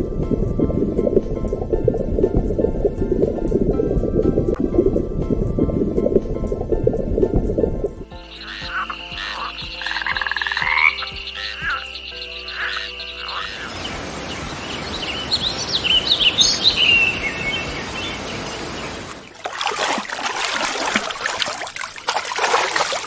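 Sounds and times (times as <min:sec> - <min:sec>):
frog croaking: 0:08.2 - 0:18.8
bird chirping: 0:08.2 - 0:19.4
steady hiss: 0:13.6 - 0:19.2.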